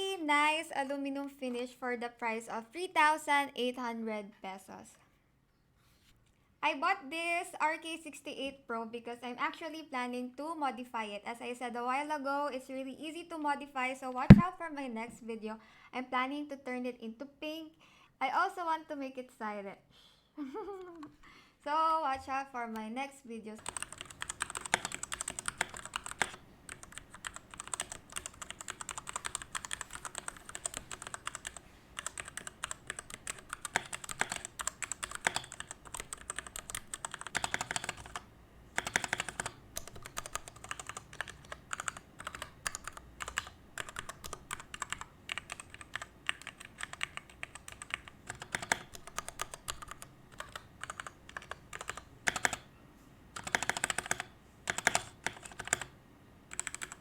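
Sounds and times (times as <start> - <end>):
mechanical keyboard typing: 14.3 - 14.5, 23.6 - 38.2, 38.8 - 52.7, 53.4 - 57.0.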